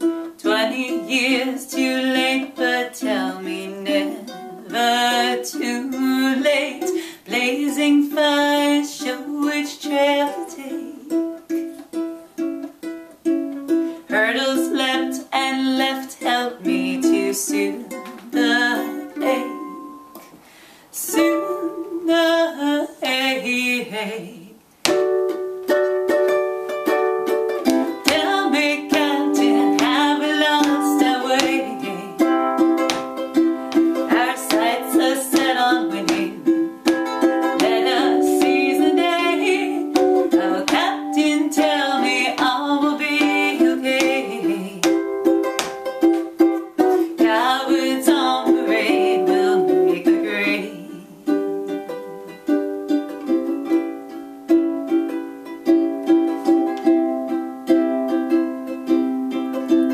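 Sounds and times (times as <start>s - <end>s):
ukulele strumming chords: 0.0s - 59.9s
wavering melody with vibrato: 16.1s - 20.4s, 25.0s - 59.9s.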